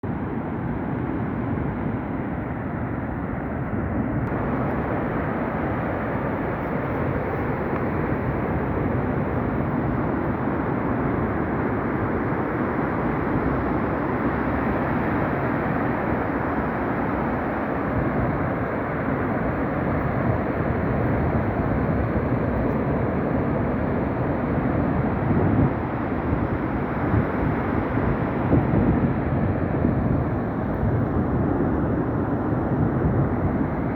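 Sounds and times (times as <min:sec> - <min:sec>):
waves breaking on a beach: 0:00.1 - 0:33.9.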